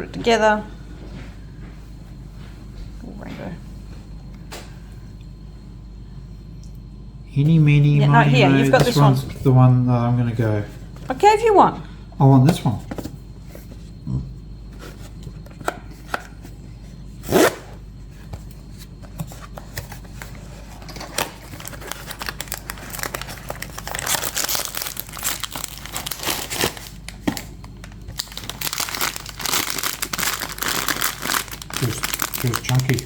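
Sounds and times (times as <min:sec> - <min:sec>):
wrapper crinkling and tearing: 0:21.0 - 0:33.0.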